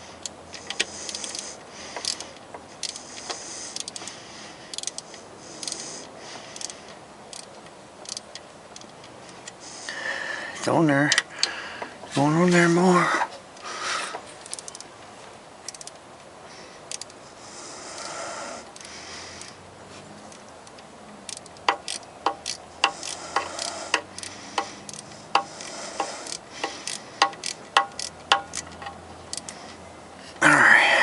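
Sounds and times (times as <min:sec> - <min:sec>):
ratchet wrench clicking: 0:00.2 - 0:02.2, 0:02.8 - 0:09.1, 0:14.4 - 0:14.9, 0:15.7 - 0:16.0, 0:16.9 - 0:17.2, 0:20.6 - 0:29.6.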